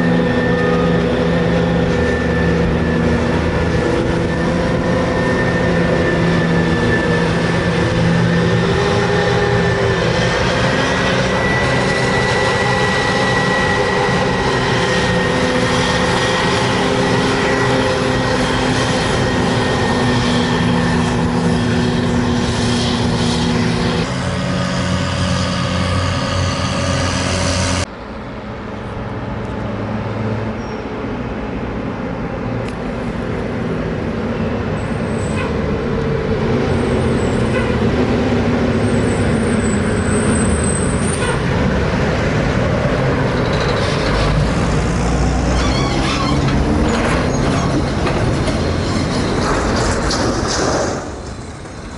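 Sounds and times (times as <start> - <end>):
tractors pulling wagons: 0.0 - 27.9, 33.0 - 51.9.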